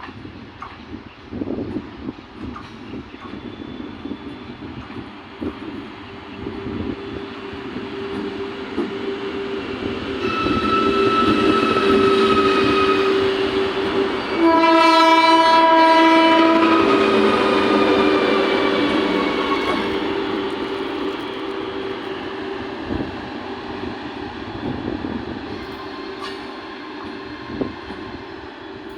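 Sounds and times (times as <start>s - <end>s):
electric locomotive rumble: 1.3s - 28.9s
locomotive horn blasts: 8.0s - 23.1s.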